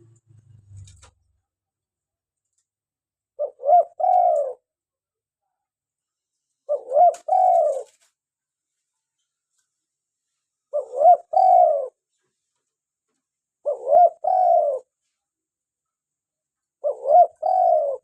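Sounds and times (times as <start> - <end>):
dove cooing: 3.4 - 4.6, 6.6 - 8.0, 10.7 - 12.0, 13.6 - 14.9, 16.8 - 18.0.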